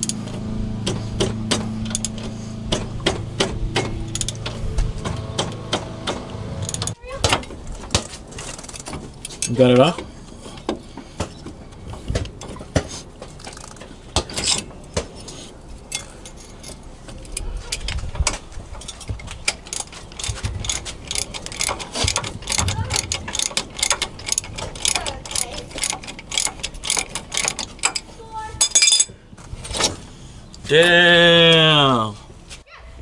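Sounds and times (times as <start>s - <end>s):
socket ratchet clicking: 4.1s - 4.5s, 19.5s - 28.0s.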